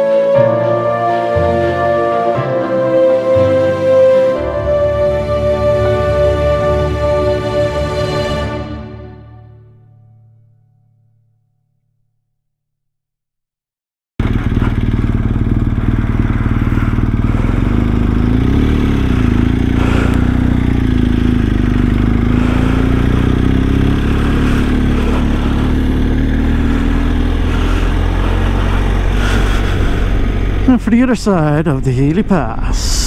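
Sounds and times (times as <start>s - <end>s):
motorcycle engine running: 14.2s - 33.0s.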